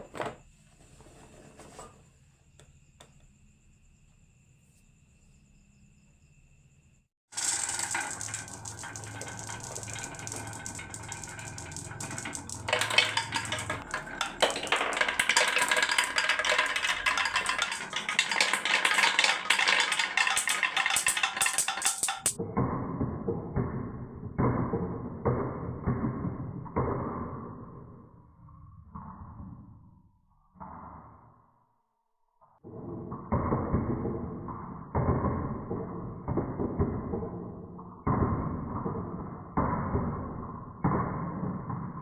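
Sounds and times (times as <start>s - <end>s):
marbles clattering down wooden run: 7.3s - 22.4s.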